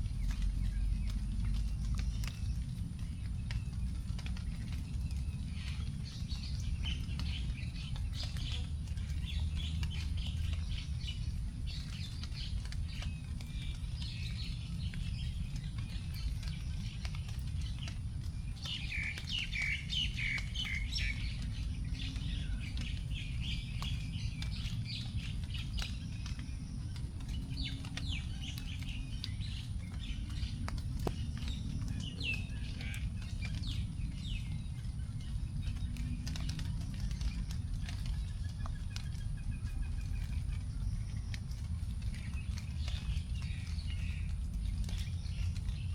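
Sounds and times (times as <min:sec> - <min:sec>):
raindrops dripping from leaves: 0:00.0 - 0:45.9
birds chirping and calling: 0:18.6 - 0:45.9.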